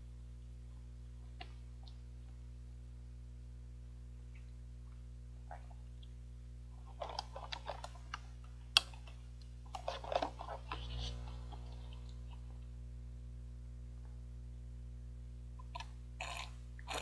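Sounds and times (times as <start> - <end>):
steady low hum: 0.0 - 17.0
slurping milk through a straw: 16.2 - 17.0.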